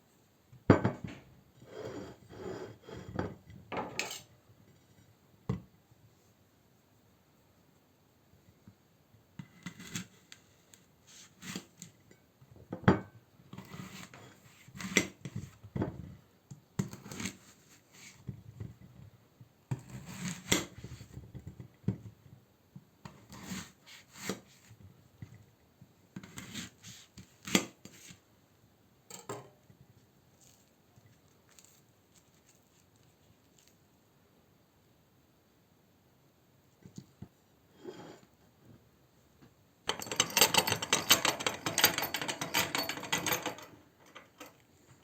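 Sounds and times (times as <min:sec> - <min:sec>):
kitchen gear knocking and clattering: 0:39.9 - 0:44.6.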